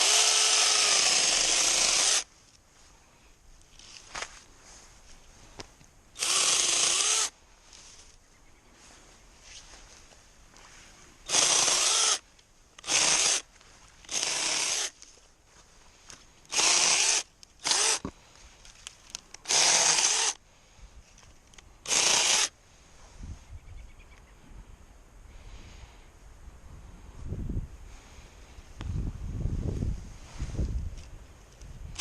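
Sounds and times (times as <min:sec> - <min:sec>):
mini chainsaw bursts: 0:00.0 - 0:02.3, 0:06.2 - 0:07.3, 0:11.3 - 0:12.2, 0:12.8 - 0:13.5, 0:14.1 - 0:15.0, 0:16.5 - 0:18.1, 0:19.4 - 0:20.4, 0:21.8 - 0:22.6.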